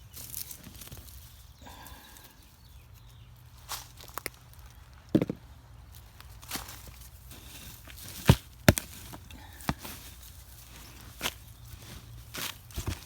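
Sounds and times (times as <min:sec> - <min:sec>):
digging scrapes in soil: 0:06.3 - 0:13.0.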